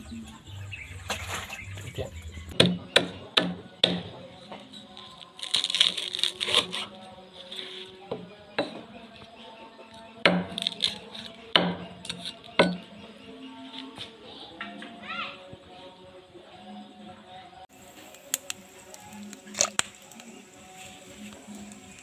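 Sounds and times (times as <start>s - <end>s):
scraping noise: 0.8s - 2.6s.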